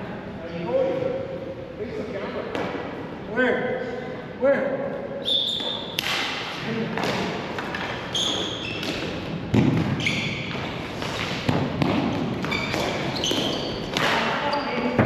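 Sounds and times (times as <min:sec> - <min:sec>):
shoes squeaking: 0:05.2 - 0:06.0, 0:07.6 - 0:09.3, 0:09.9 - 0:11.3, 0:12.3 - 0:15.0
hockey sticks clacking: 0:05.5 - 0:14.6.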